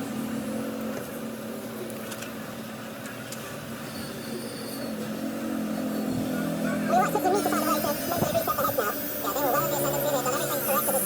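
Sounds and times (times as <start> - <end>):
stadium crowd voices: 6.1 - 11.0.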